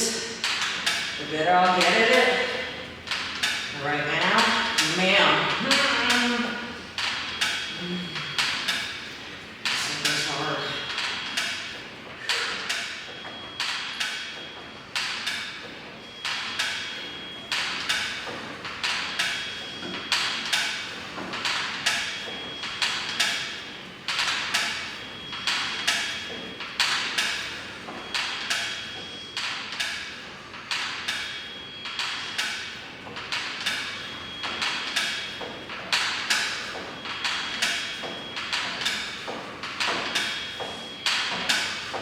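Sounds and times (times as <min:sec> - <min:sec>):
exercise machine knocking: 0:00.0 - 0:16.9, 0:17.5 - 0:42.0.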